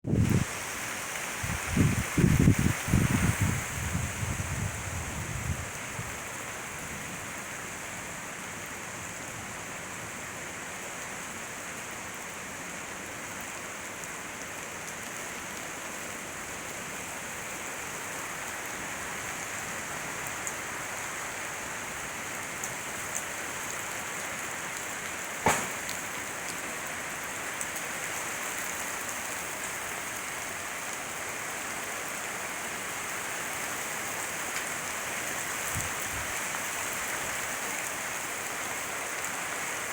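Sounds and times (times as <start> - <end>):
heavy rain falling: 0.0 - 39.9
sharp knock: 25.5 - 26.0.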